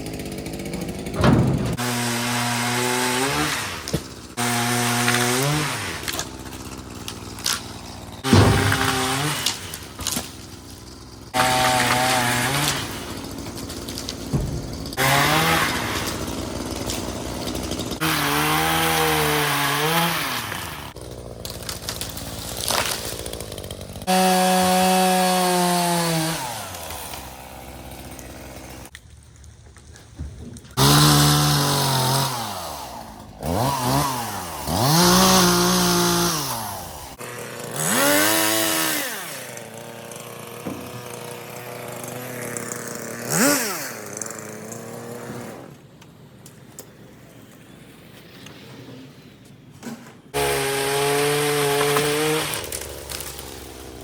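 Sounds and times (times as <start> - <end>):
chainsaw revving and cutting: 0.0 - 28.9, 30.8 - 45.7, 50.3 - 54.0.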